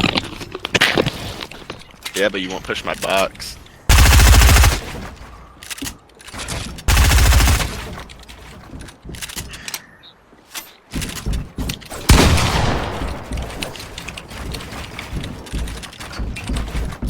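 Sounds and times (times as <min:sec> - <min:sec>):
automatic gunfire burst: 0:03.9 - 0:04.9, 0:06.9 - 0:07.8.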